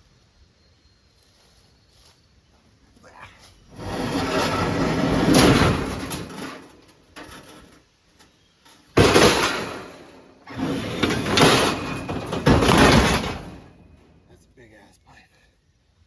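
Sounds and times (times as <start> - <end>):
scrap metal pipes clattering: 3.7 - 7.8, 8.9 - 14.0.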